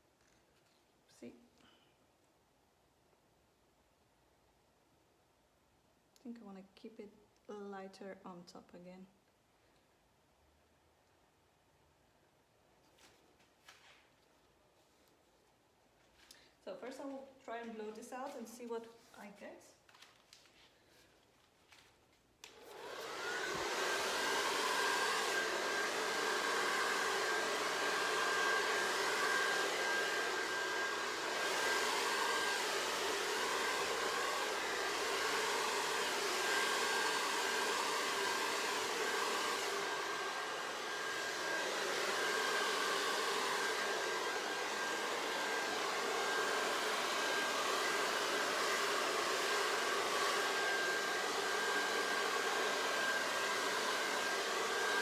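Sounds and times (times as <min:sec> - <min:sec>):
hair dryer whine and airflow: 0:16.3 - 0:19.3, 0:22.4 - 0:55.0.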